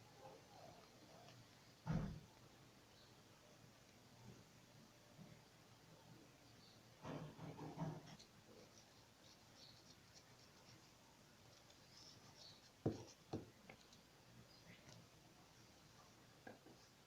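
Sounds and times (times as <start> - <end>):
faint scratching: 7.0 - 17.0.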